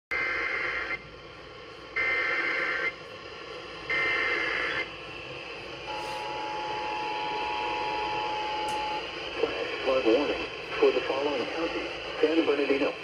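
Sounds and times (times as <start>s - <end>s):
radio hiss: 0.1s - 13.0s
two-tone attention signal: 5.9s - 9.0s.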